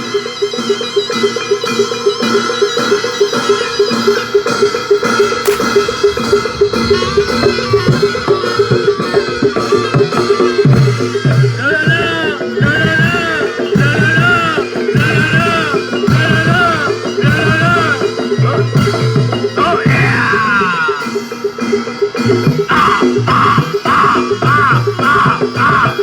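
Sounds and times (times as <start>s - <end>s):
drumming and metal percussion: 0.0s - 26.0s.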